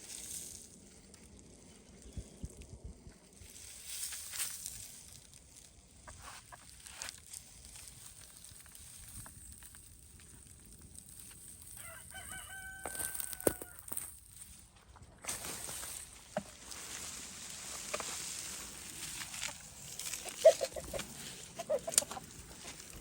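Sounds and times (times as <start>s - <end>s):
faint scratching and rustling: 0.0s - 23.0s
rooster crowing: 11.8s - 13.9s.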